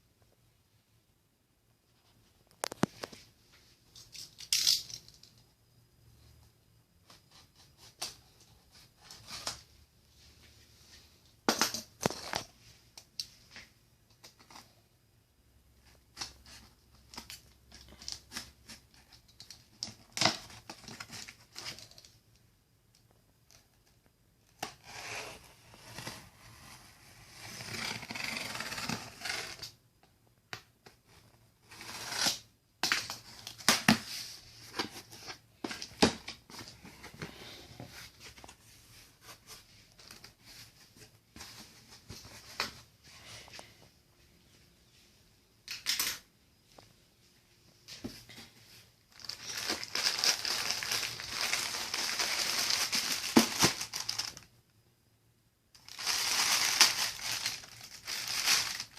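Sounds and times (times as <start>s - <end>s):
plastic wrapping crinkling: 49.1s - 54.5s, 55.8s - 58.9s.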